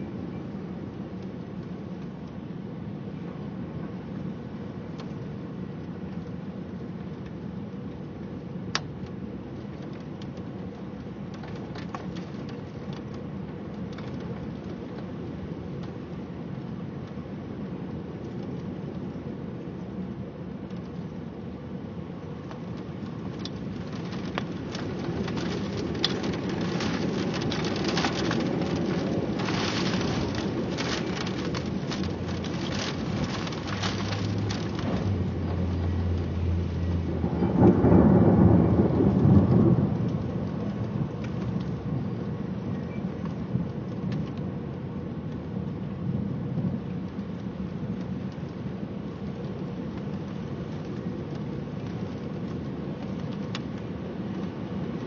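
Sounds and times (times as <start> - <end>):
steady rain: 0.0 - 55.0
raindrops ticking on surfaces: 0.1 - 55.0
low rumble of thunder: 22.2 - 55.0.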